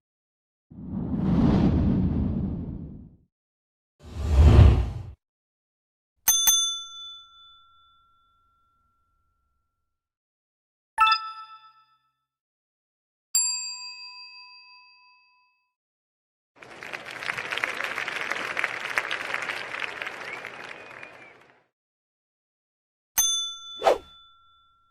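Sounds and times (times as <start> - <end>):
bell-like dings: 6.3 - 9.0, 11.0 - 12.2, 13.4 - 15.6, 23.2 - 24.9.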